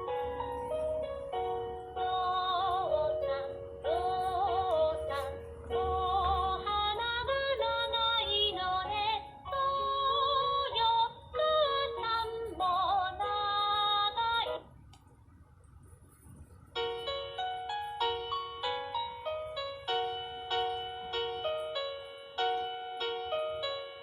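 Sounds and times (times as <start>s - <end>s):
simple keyboard accompaniment: 0.0s - 24.0s
woman singing: 2.0s - 14.6s.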